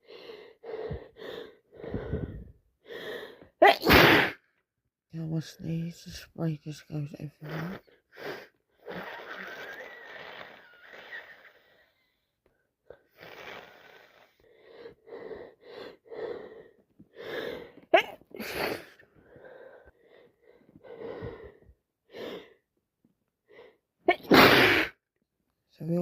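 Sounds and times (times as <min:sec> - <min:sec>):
woman wheezing breaths: 0:00.0 - 0:03.6, 0:12.9 - 0:22.6
woman sneezing loudly: 0:03.6 - 0:04.4, 0:17.9 - 0:19.0, 0:24.1 - 0:25.0.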